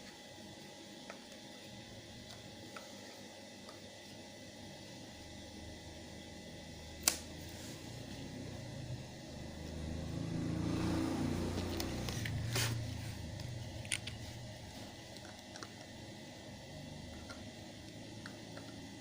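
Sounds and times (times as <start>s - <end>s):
sharp clicks of parts handled: 13.4s - 14.2s.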